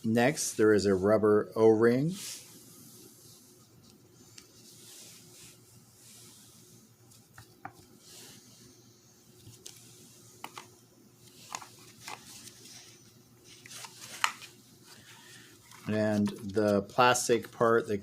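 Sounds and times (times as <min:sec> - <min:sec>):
rubbing of small parts: 0:09.3 - 0:17.8.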